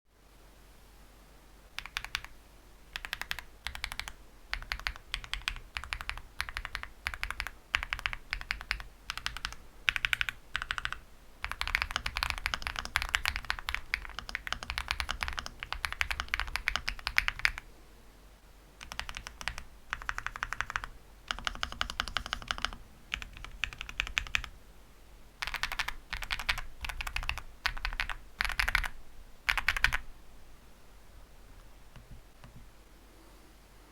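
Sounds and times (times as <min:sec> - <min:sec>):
typing on mechanical keyboard: 0:01.8 - 0:02.4, 0:03.0 - 0:17.6, 0:18.8 - 0:24.5, 0:25.4 - 0:30.1.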